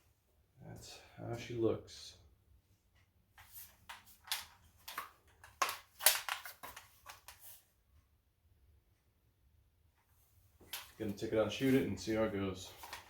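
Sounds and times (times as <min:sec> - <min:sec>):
rifle parts clicking and knocking: 0:03.9 - 0:07.3.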